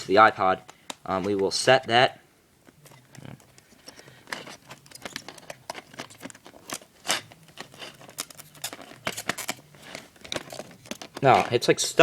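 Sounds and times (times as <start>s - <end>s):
packaging clicks and rustles: 2.7s - 12.0s.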